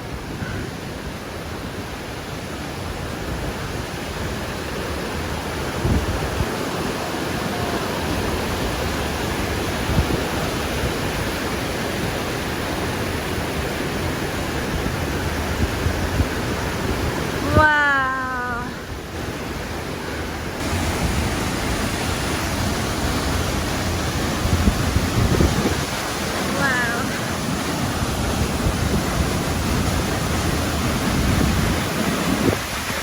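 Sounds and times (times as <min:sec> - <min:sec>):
waterfall pouring: 0:20.6 - 0:33.0.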